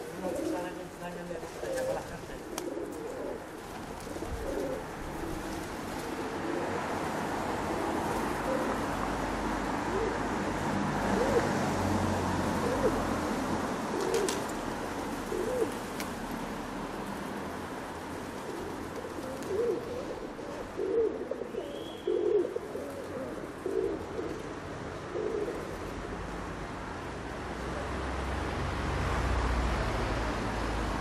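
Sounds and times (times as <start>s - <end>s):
doves cooing: 0.0s - 7.2s, 7.9s - 9.0s, 9.8s - 11.6s, 12.6s - 13.1s, 13.8s - 25.9s
street background noise: 0.0s - 31.0s.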